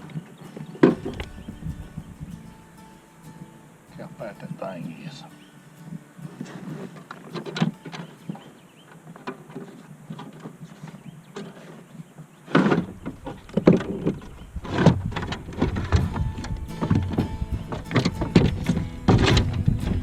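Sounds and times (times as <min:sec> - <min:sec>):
clicks and scrapes on kayak: 0:09.0 - 0:16.2.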